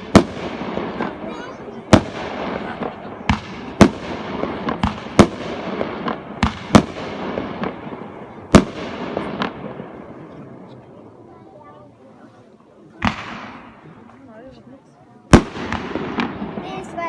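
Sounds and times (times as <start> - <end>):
fireworks crackling: 0.0 - 10.6, 13.0 - 14.2, 15.3 - 17.0
fireworks bangs: 0.0 - 10.7, 12.9 - 14.1, 15.3 - 17.0.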